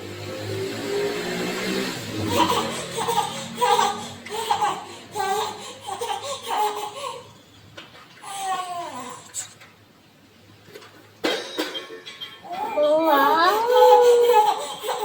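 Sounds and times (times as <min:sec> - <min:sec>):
baby girl laughing: 0:02.1 - 0:07.3, 0:12.5 - 0:15.0.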